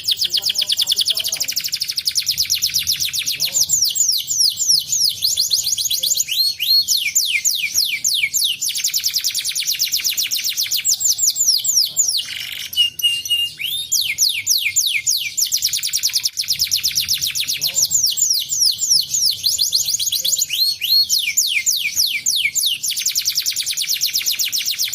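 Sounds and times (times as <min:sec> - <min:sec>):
canary singing: 0:00.0 - 0:24.9.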